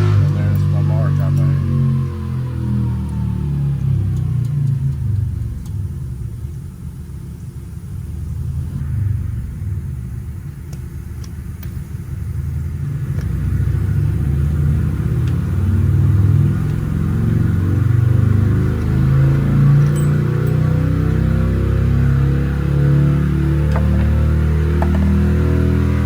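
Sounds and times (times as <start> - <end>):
bass-heavy background music: 0.0 - 5.2, 13.0 - 26.0.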